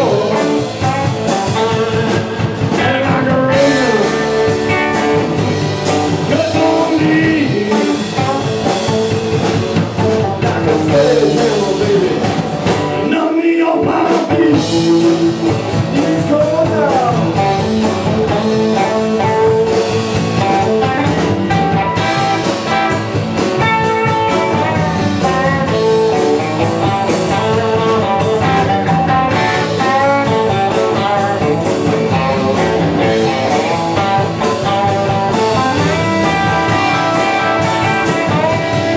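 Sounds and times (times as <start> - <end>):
electric guitar bending notes: 0.0 - 13.1, 14.5 - 38.9
blues-rock band playing: 0.0 - 38.9.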